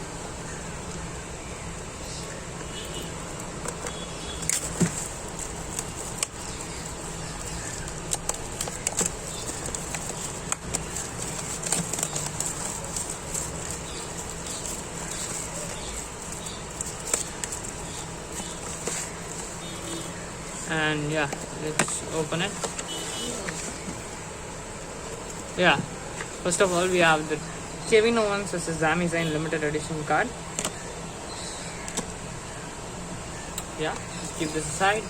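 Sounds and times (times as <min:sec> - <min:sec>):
background hiss and hum: 0:00.0 - 0:35.0
plastic wrap crinkling and tearing: 0:03.6 - 0:20.6.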